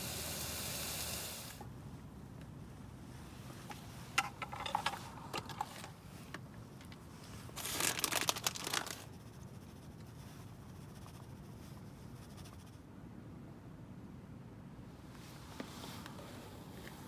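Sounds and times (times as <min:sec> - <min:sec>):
packaging rustling and crinkling: 0:06.8 - 0:09.1.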